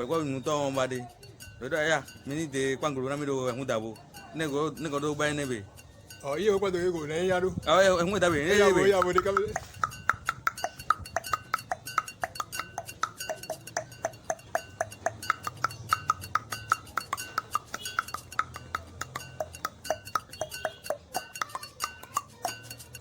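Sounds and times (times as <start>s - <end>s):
man's tongue clicks: 9.0s - 23.0s.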